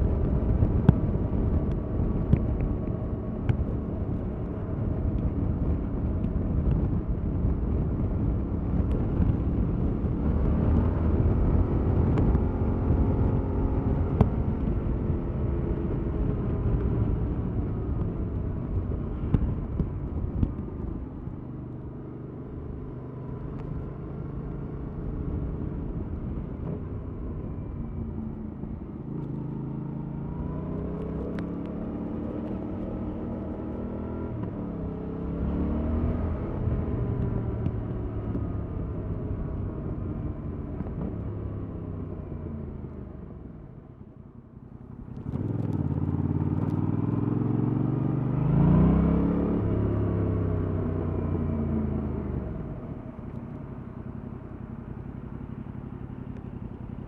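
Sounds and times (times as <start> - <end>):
wind and road noise: 0.0 - 57.0
motorcycle engine: 44.6 - 57.0.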